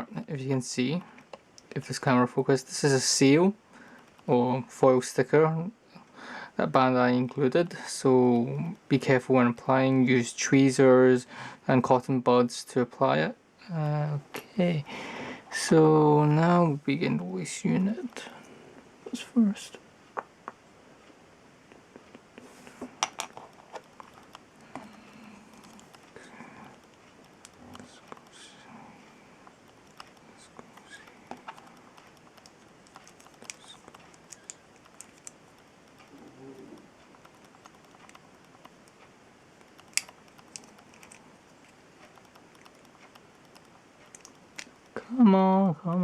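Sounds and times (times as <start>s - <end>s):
plastic parts clicking and tapping: 30.8s - 36.2s, 39.6s - 44.8s
plastic parts clicking: 39.6s - 44.8s.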